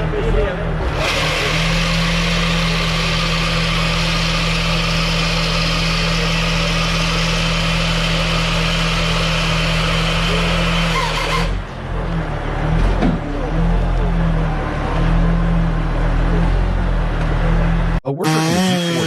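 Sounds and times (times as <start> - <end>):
engine running steadily: 0.0 - 18.0.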